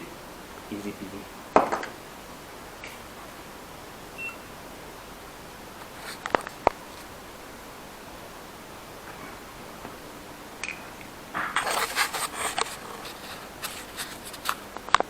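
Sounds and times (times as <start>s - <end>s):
sharp click: 10.6s - 11.9s
small hard objects clattering and scraping: 11.4s - 15.0s.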